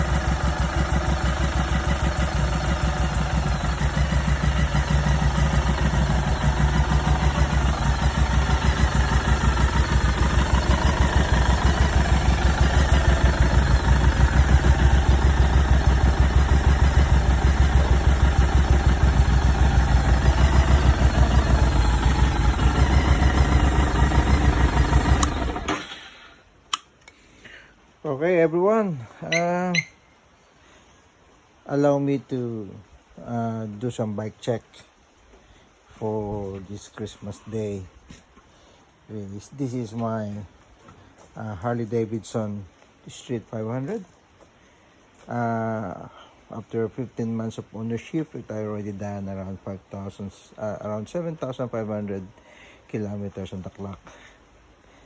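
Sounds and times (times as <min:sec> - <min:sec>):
motorcycle engine idling: 0:00.0 - 0:26.1.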